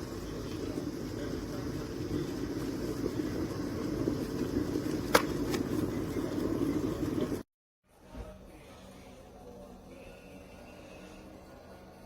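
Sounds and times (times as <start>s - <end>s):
electric kettle heating water: 0.0s - 7.5s.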